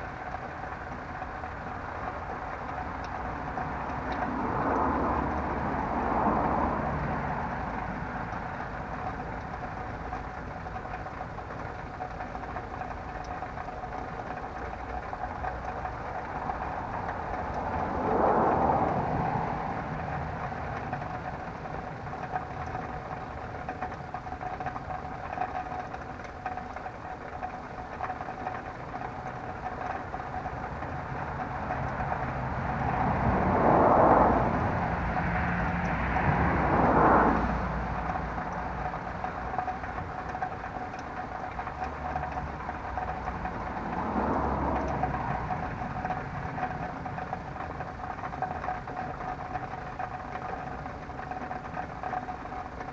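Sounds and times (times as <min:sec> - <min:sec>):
vehicles passing: 0:00.0 - 0:26.8, 0:28.0 - 0:52.9
constant thin tone: 0:00.0 - 0:52.9
low traffic rumble: 0:00.0 - 0:52.9.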